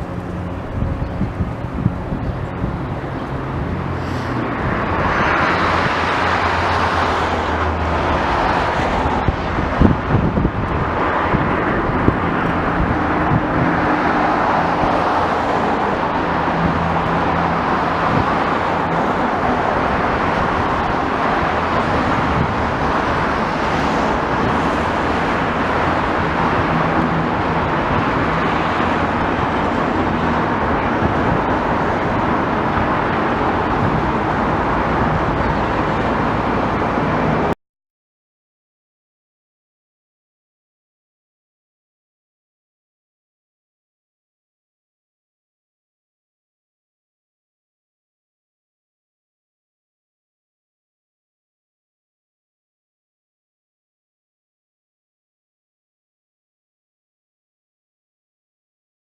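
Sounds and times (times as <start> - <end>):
road traffic: 0.0 - 37.6
vehicles passing: 0.0 - 37.6.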